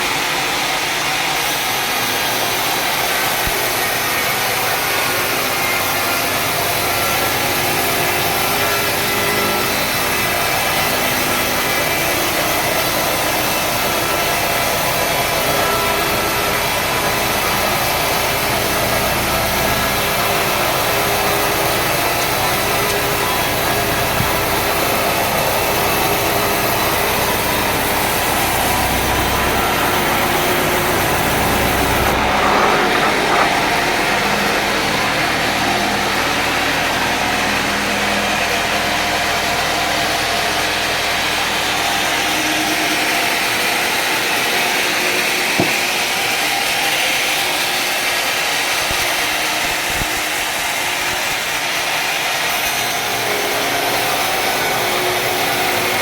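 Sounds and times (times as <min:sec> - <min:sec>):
saw cutting through log: 0:00.0 - 0:56.0
short knock: 0:45.6 - 0:46.0.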